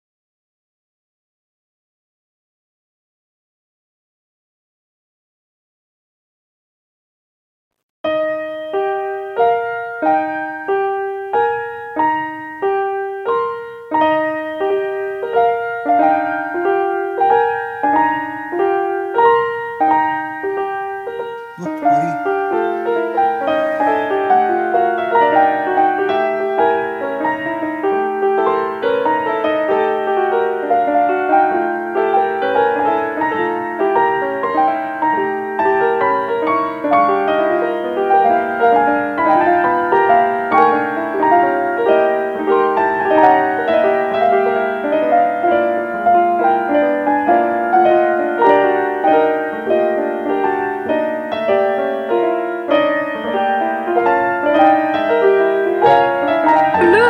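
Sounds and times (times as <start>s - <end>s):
piano music: 47.8s - 57.0s.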